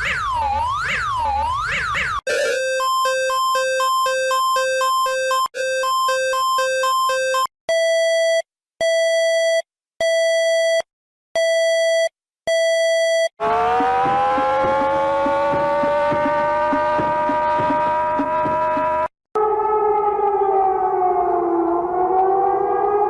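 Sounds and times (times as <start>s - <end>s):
rising siren tone: 0.0s - 7.5s, 13.4s - 23.0s
two-tone alarm warble: 0.0s - 9.3s, 11.4s - 23.0s
hi-lo emergency alert beep: 0.0s - 10.8s.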